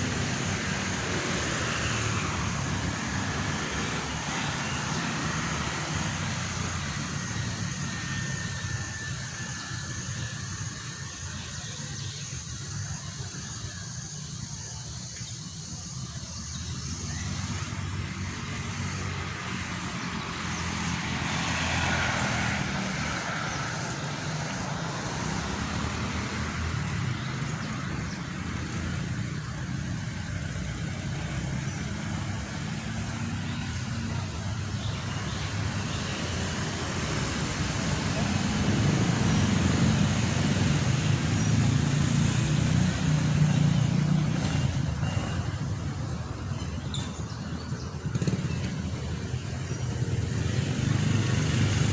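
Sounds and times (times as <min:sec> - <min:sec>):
road traffic: 0:00.0 - 0:51.9
vehicle engine running: 0:14.0 - 0:51.9
vehicle passing: 0:16.2 - 0:46.5, 0:47.6 - 0:51.9.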